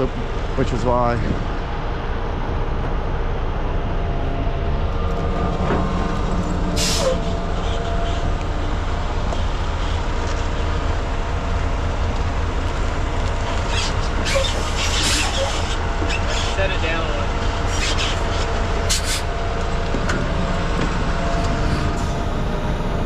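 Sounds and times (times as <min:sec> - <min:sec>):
diesel engines rumbling: 0:00.0 - 0:23.0
sharp hiss of air: 0:18.9 - 0:19.2.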